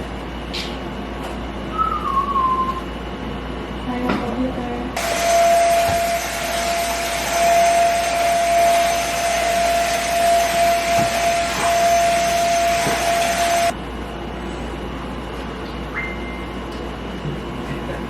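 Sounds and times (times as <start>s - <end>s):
vacuum cleaner whining: 5.0s - 13.8s.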